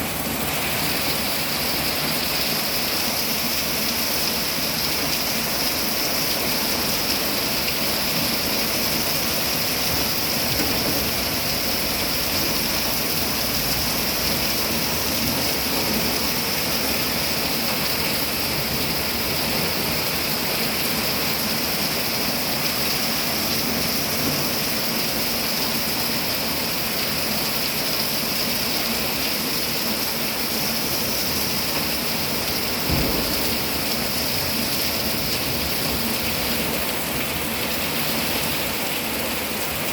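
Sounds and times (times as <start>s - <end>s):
heavy rain pouring: 0.0s - 39.9s
low thump: 32.8s - 33.8s.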